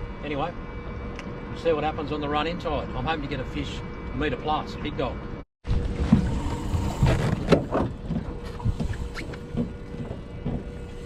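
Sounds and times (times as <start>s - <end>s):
low rumble: 5.3s - 11.0s.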